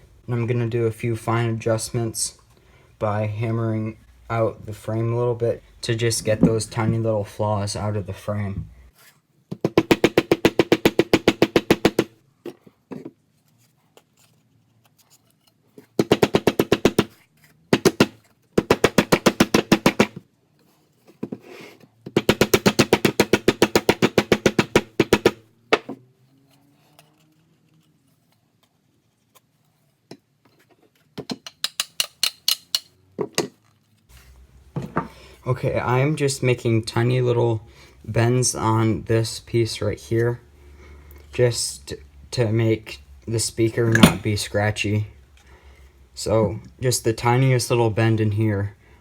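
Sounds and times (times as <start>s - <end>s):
rapid hammer taps on metal frame: 43.9s - 44.3s.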